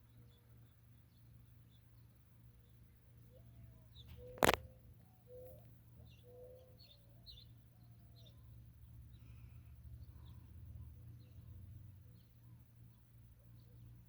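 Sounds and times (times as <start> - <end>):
low cooing bird calls: 3.3 - 7.5.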